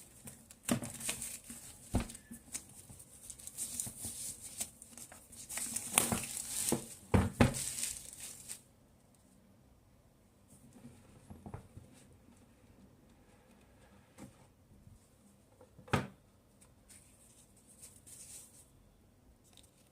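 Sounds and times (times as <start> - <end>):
packaging crinkling and rustling: 0.0 - 8.7.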